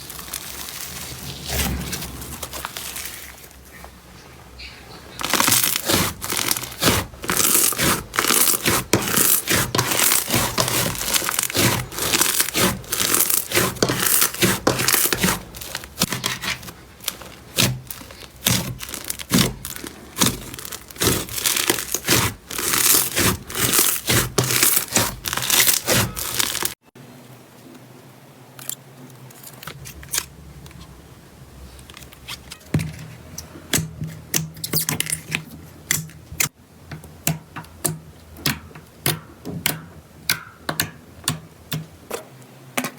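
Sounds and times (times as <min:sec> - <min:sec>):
slime crackling and popping: 0:00.0 - 0:03.2, 0:05.2 - 0:26.8.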